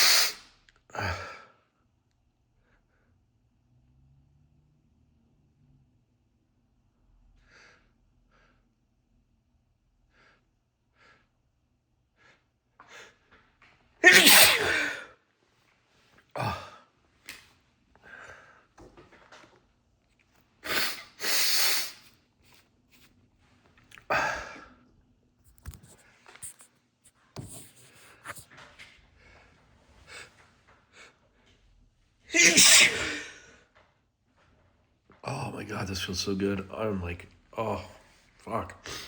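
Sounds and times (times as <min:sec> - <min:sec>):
man sneezing: 0:00.0 - 0:00.4, 0:14.0 - 0:15.1, 0:16.4 - 0:16.8, 0:20.6 - 0:22.0, 0:24.1 - 0:24.6, 0:32.3 - 0:33.5, 0:38.7 - 0:39.0
short breaths: 0:00.0 - 0:00.4.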